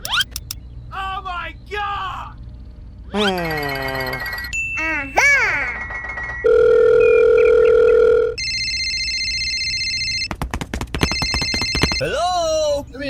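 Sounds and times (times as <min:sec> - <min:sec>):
high electronic ringing: 0:00.0 - 0:00.6, 0:05.9 - 0:10.3
synthetic swoops: 0:00.0 - 0:00.6.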